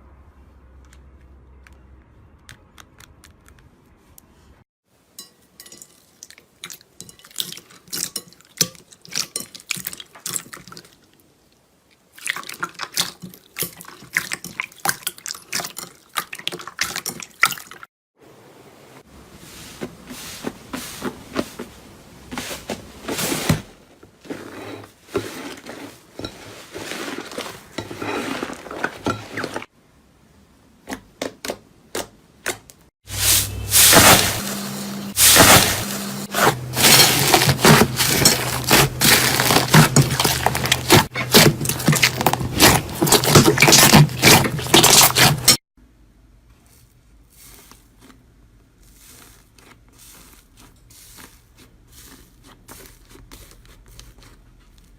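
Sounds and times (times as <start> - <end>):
crunchy slime crackling: 35.1 - 45.6.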